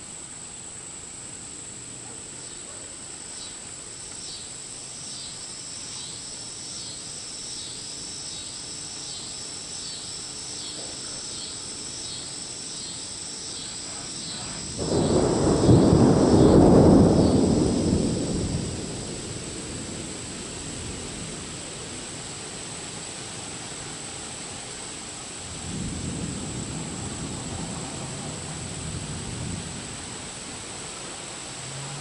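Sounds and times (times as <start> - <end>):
rain hissing: 0.0 - 32.0
thunder rumbling: 13.8 - 23.5, 25.4 - 30.8.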